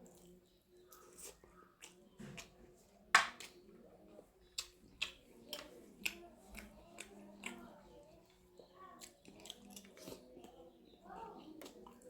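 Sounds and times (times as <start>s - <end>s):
eating clicks and smacks: 0.9s - 2.6s, 4.6s - 7.6s, 9.0s - 10.6s, 11.6s - 12.0s.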